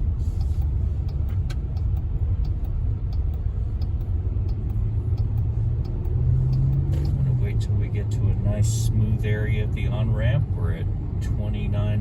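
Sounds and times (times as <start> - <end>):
road and engine noise in car cabin: 0.0 - 12.0.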